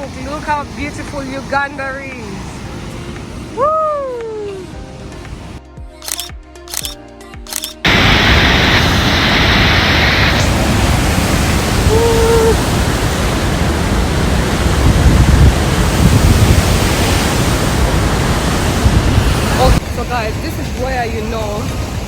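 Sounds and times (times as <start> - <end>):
rushing waterfall: 7.9 - 22.0.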